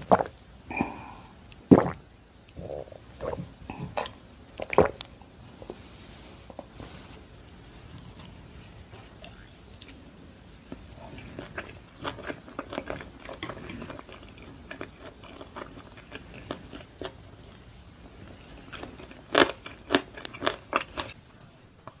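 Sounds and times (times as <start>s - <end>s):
chewing and crunching pancakes: 7.8s - 22.0s.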